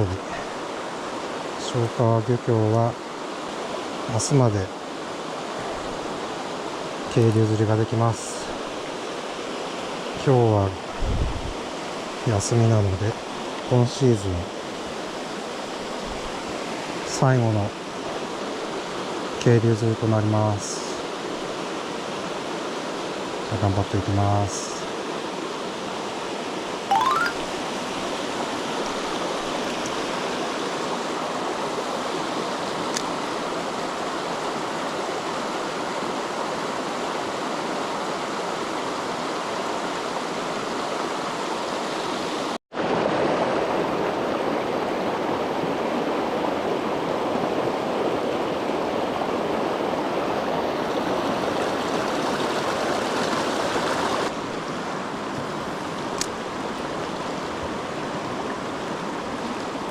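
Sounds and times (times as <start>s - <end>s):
stream rushing over rocks: 24.9s - 59.9s.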